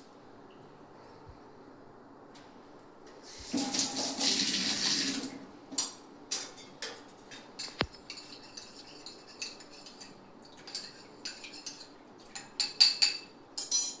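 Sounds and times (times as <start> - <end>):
metal utensils and dishes clinking: 5.8 - 14.0.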